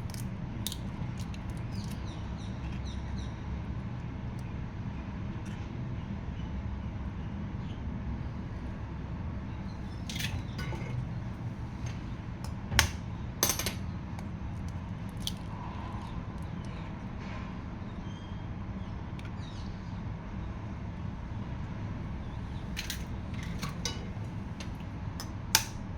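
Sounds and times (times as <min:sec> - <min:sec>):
low background hum: 0:00.0 - 0:25.9
kitchenware clinking: 0:09.9 - 0:13.8, 0:22.6 - 0:25.8.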